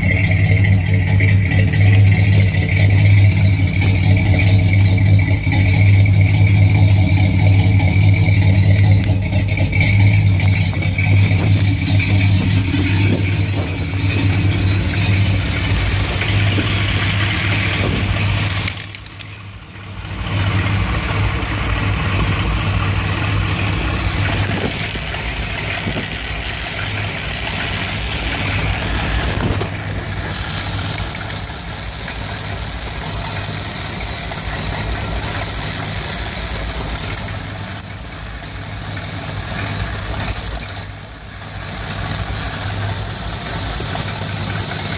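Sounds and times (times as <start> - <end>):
van engine idling rough: 0.0 - 44.9.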